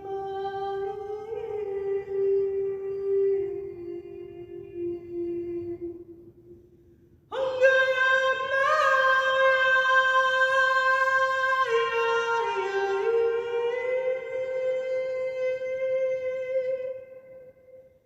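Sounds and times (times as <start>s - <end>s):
woman singing wordless chant: 0.0s - 6.2s, 7.3s - 17.6s.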